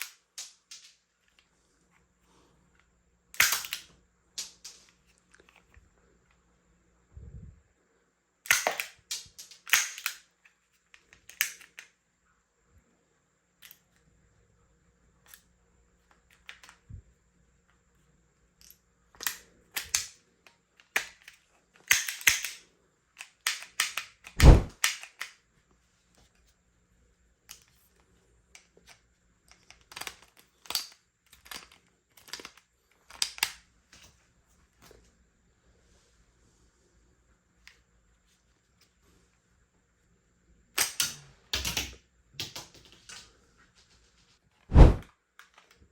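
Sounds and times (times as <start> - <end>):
toy gun clicks: 3.4 - 4.8, 8.5 - 10.3, 11.2 - 11.9, 19.2 - 20.2, 20.8 - 22.6, 23.2 - 25.4.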